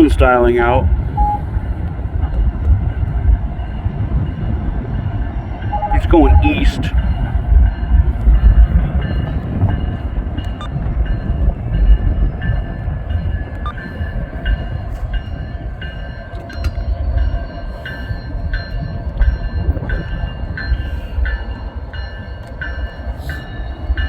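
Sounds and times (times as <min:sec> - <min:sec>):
freight train rumbling: 0:00.0 - 0:24.0
wind buffeting microphone: 0:00.0 - 0:24.0
bell ringing: 0:01.2 - 0:01.4, 0:05.8 - 0:07.0.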